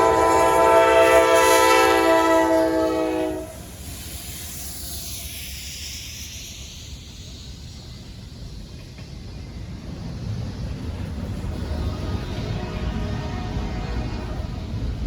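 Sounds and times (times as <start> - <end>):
locomotive air horn: 0.0 - 3.6, 11.9 - 14.8
train low rumble: 0.0 - 15.0
hiss rising in pitch: 2.5 - 9.8.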